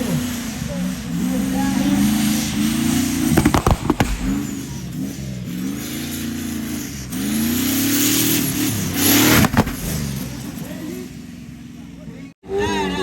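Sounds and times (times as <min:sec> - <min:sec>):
racing vehicle engine revving: 0:00.0 - 0:11.8
sharp knocks: 0:03.4 - 0:04.8, 0:09.4 - 0:10.1.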